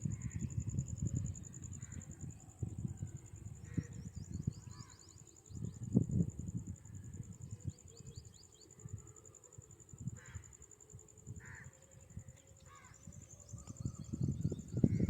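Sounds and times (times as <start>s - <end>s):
crow cawing: 11.4s - 11.8s.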